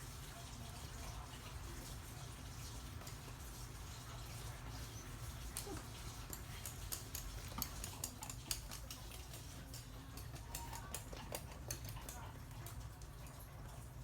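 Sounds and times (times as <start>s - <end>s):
dog claws clicking on hard floor: 5.5s - 12.7s.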